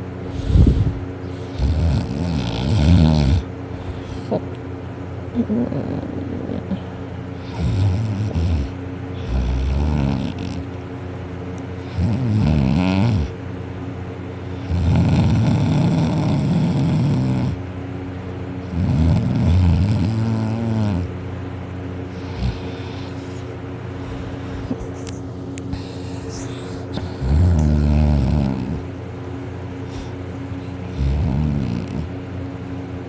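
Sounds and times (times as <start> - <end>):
person snoring loudly: 0.3 - 3.5, 7.4 - 10.6, 11.8 - 13.3, 14.6 - 17.6, 18.6 - 21.1, 26.9 - 28.8, 30.9 - 32.1.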